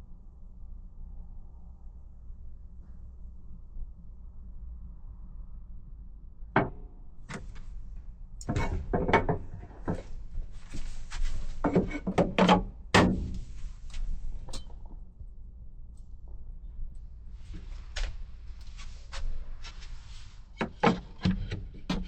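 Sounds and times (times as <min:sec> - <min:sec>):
wooden knocks and clunks: 0:06.6 - 0:07.6, 0:08.4 - 0:13.7, 0:20.6 - 0:22.0.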